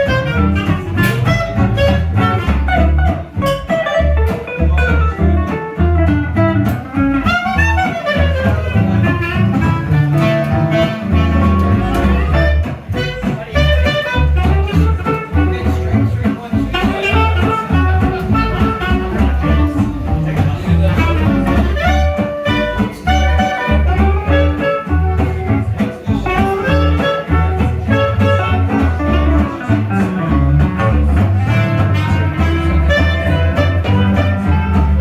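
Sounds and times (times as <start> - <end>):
guitar: 0.0 - 35.0
swing jazz band playing: 0.0 - 35.0
walking bass line: 0.0 - 35.0.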